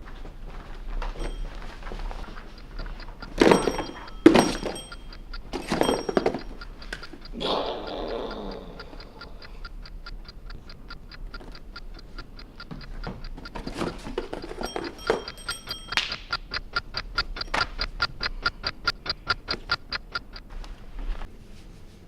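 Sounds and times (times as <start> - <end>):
rapid even ticking: 0.0 - 21.2
broken high-pitched beeping: 1.2 - 9.7, 12.8 - 20.3.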